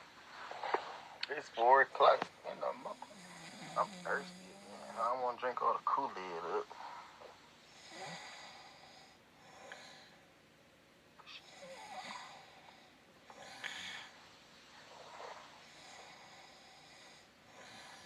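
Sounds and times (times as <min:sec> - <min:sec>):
person snoring faintly: 0:02.6 - 0:05.4.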